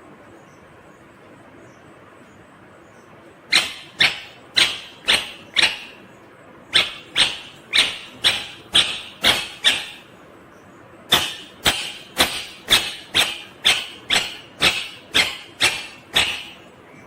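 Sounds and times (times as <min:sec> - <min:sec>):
parakeet sharp calls: 0:03.5 - 0:10.2, 0:11.1 - 0:17.0.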